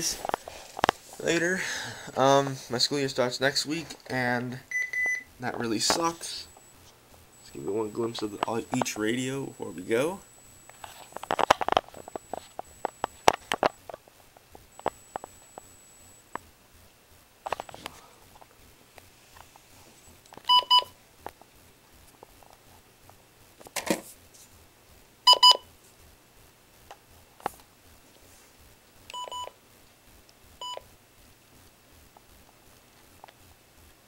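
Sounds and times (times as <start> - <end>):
radios being handled: 0.0 - 1.5, 5.0 - 7.0, 7.6 - 16.4, 17.4 - 19.6
double electronic beeps: 4.7 - 5.3.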